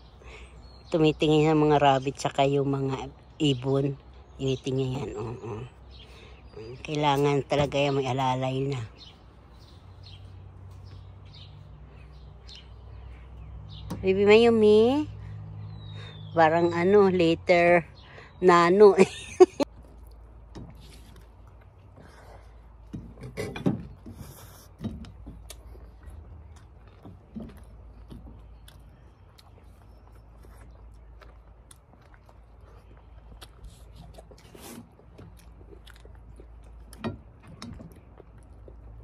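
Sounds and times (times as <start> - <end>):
chewing and eating: 19.6 - 39.0.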